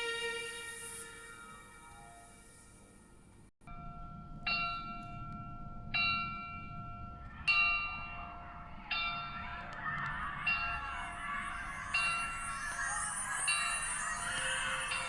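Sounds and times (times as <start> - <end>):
bell-like chime notes: 3.7 - 15.0.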